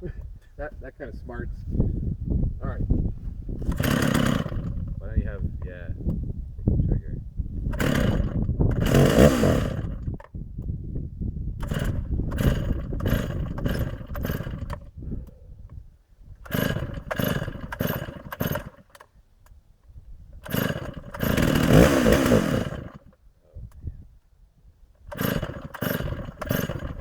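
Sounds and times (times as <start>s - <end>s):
chainsaw starter cord ripping: 3.6s - 4.9s, 7.6s - 10.3s, 11.6s - 14.9s, 16.4s - 19.1s, 20.4s - 23.2s, 25.0s - 27.0s
chainsaw engine running raggedly: 3.6s - 5.0s, 7.6s - 10.2s, 11.6s - 15.0s, 16.4s - 19.1s, 20.3s - 23.2s, 25.0s - 27.0s.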